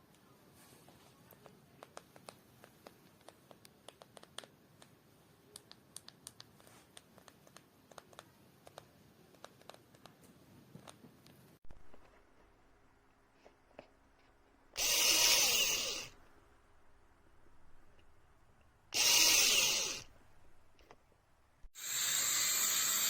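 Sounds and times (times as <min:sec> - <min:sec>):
small clicks and taps of objects: 0:01.2 - 0:12.2.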